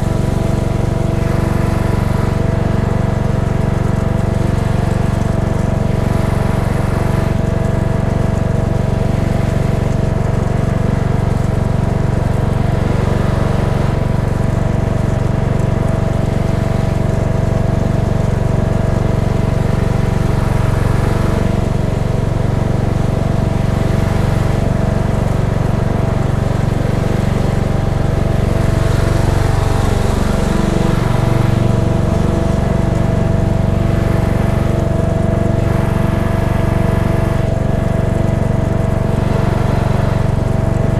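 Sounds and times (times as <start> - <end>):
riding mower engine running: 0.0 - 40.9.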